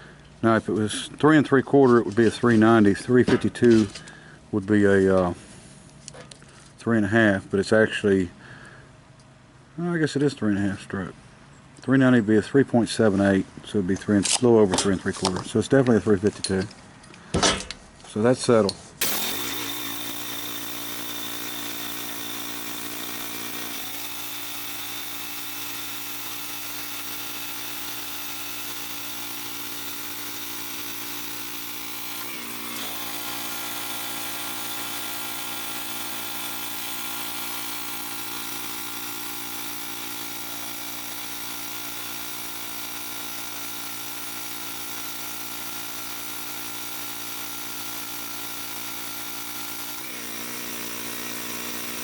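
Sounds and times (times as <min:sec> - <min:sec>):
pressure washer motor hum: 0:19.0 - 0:52.0.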